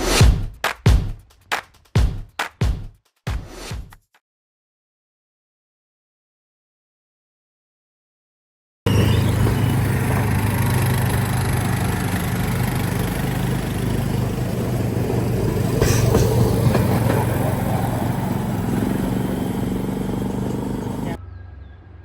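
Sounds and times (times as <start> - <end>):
vehicle engine running: 8.9 - 21.2.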